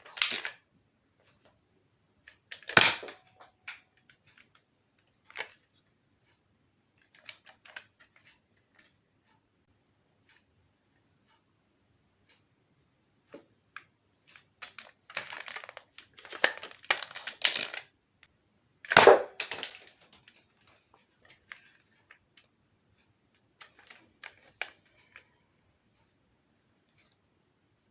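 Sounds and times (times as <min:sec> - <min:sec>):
plastic toy clicks: 0:00.0 - 0:00.6, 0:02.3 - 0:04.6, 0:07.0 - 0:08.9, 0:13.8 - 0:17.9, 0:18.8 - 0:22.5, 0:23.3 - 0:25.4
rustling and crackling: 0:14.2 - 0:18.3, 0:19.3 - 0:22.6
sharp pop: 0:18.9 - 0:19.4.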